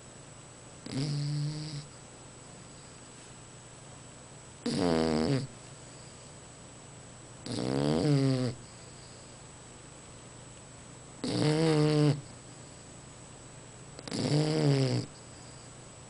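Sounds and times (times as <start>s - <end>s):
dog snoring: 0.8s - 2.0s, 4.6s - 6.2s, 7.4s - 9.4s, 11.2s - 12.4s, 14.0s - 15.7s.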